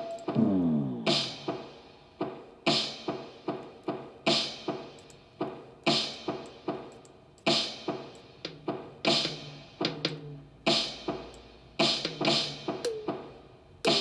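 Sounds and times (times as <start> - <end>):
drum beat: 0.0 - 14.0.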